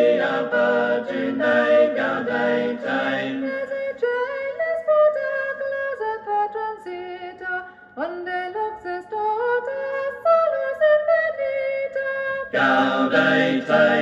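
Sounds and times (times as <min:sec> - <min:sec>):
choral music from record player: 0:00.0 - 0:04.2, 0:12.5 - 0:14.0.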